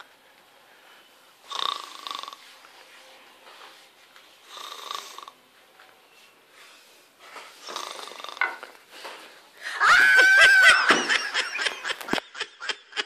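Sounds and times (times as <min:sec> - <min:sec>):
laughter: 0:09.8 - 0:13.0.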